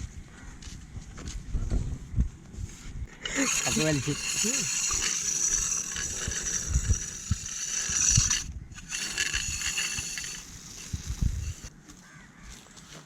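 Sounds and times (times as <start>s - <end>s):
pulley wheel whirring: 3.1s - 11.7s.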